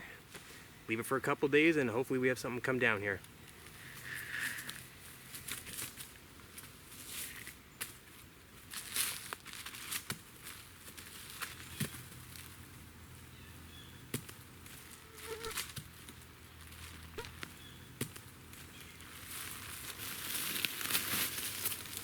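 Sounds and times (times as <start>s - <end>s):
rustling: 14.6s - 22.0s.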